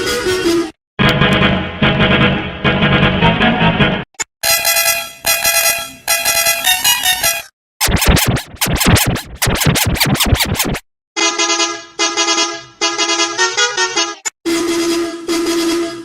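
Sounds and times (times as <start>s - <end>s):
musical bus horn tune: 4.4s - 7.5s, 11.2s - 16.0s.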